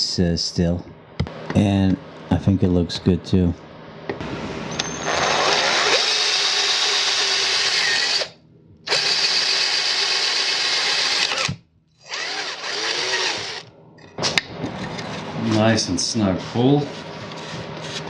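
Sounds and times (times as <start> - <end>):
electric drill boring: 5.1 - 13.7.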